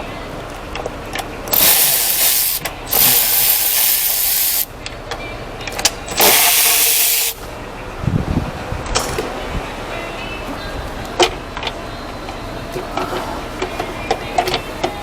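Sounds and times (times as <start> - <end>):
compressed air hissing from nozzle: 1.5 - 4.7, 6.2 - 7.4.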